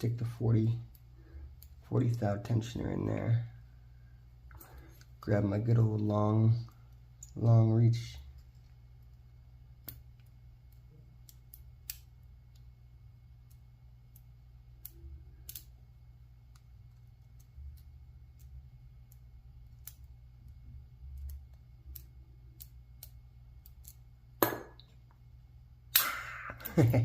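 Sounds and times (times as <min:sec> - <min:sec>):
padlock shackle snapping open: 0:14.8 - 0:15.7.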